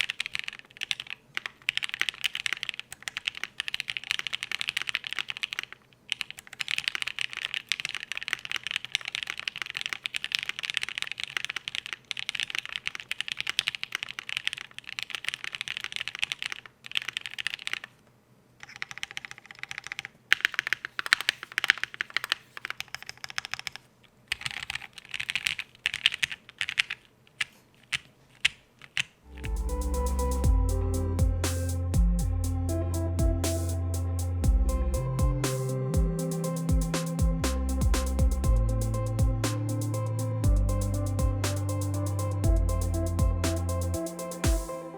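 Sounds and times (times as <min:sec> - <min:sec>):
mechanical keyboard typing: 0:00.0 - 0:18.0, 0:18.6 - 0:29.8
electronic music: 0:29.3 - 0:44.9.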